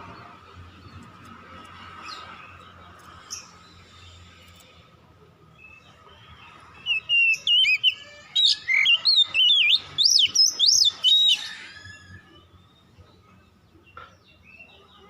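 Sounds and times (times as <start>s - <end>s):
bird singing whistled notes: 6.8s - 12.8s.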